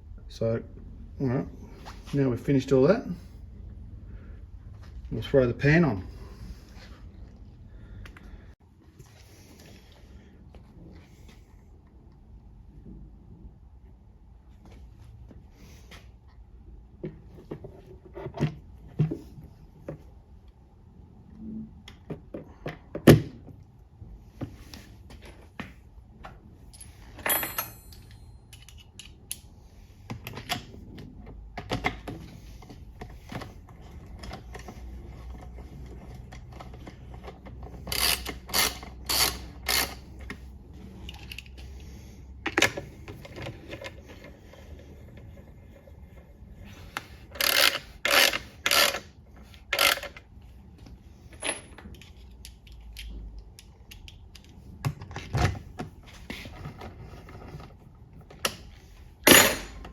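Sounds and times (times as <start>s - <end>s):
tools clinking against metal: 26.7s - 29.2s.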